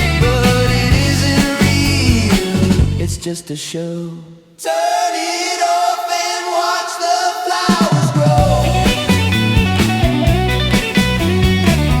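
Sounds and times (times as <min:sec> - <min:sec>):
steady drum beat: 0:00.0 - 0:03.1, 0:07.6 - 0:12.0
bass line: 0:00.0 - 0:03.2, 0:08.2 - 0:12.0
electric guitar: 0:00.0 - 0:03.2, 0:08.4 - 0:12.0.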